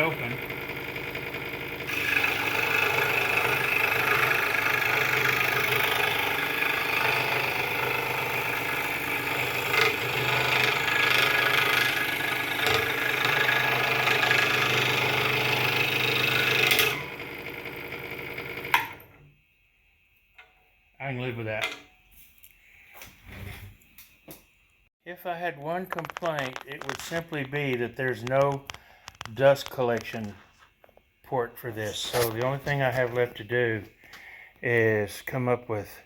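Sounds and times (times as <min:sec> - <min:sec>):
scroll saw humming: 0:00.0 - 0:19.2.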